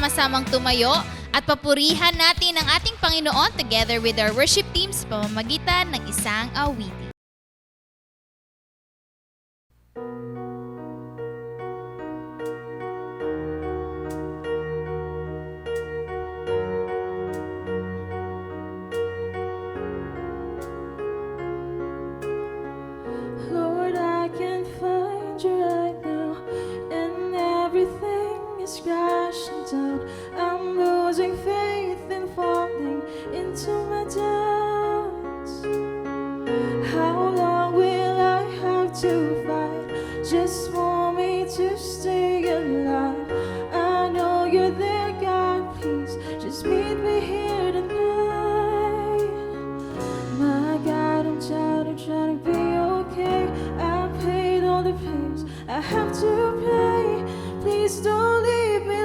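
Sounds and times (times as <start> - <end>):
band accompaniment with bass line: 0.0 - 1.4, 2.0 - 7.1
woman singing lead vocals: 0.0 - 6.9, 23.2 - 35.8, 36.6 - 59.0
people singing: 55.8 - 57.4.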